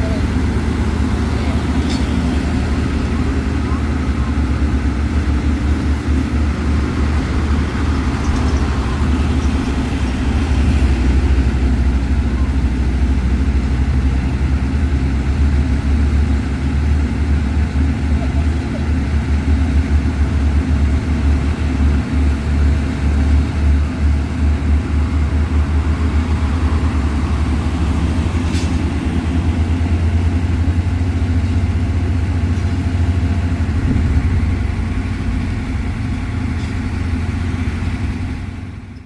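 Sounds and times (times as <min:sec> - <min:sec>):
heavy diesel engine rumbling: 0:00.0 - 0:39.0.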